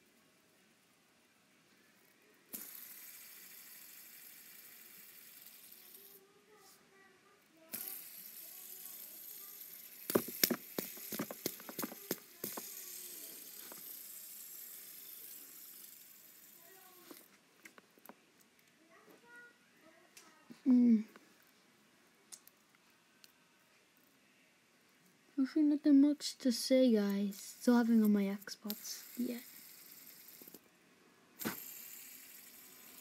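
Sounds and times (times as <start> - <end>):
fidget spinner whirring: 0.0 - 17.4, 26.2 - 30.7, 31.4 - 33.0
fidget spinner sharp clicks: 2.5 - 6.2, 7.7 - 17.3, 27.0 - 30.6, 31.4 - 33.0.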